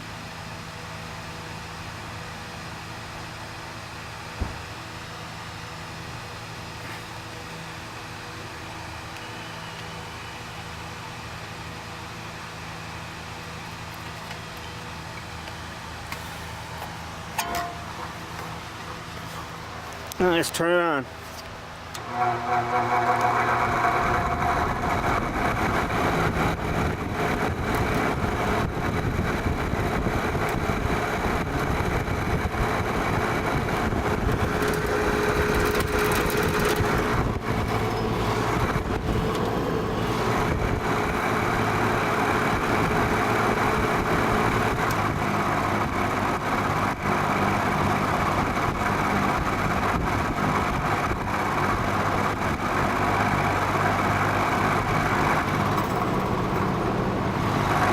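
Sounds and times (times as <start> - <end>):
box fan running: 0.0 - 57.9
fast rattle from motor bearings: 32.3 - 44.9, 54.2 - 57.9.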